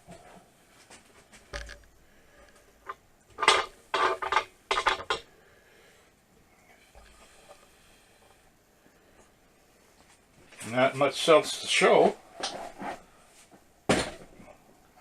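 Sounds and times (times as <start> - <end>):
metal tool clattering: 3.4 - 5.2.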